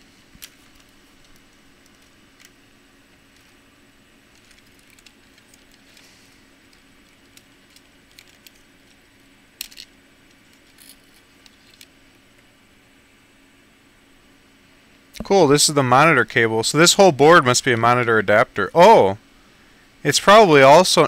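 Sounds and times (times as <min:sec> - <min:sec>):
faint steady hum: 0:00.0 - 0:21.0
laptop parts clicking and scraping: 0:04.3 - 0:06.1, 0:06.7 - 0:11.9.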